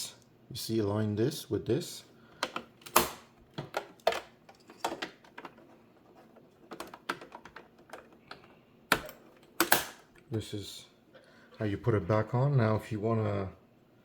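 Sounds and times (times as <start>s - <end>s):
monitor stand clicks and knocks: 2.4s - 5.8s.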